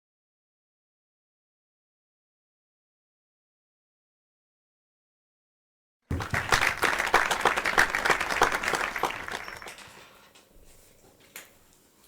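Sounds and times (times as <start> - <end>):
audience applause: 6.1 - 10.2.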